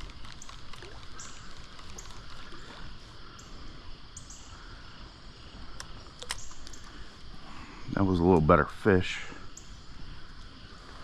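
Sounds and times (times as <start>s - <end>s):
sharp clicks: 0.0s - 2.7s, 5.7s - 7.0s.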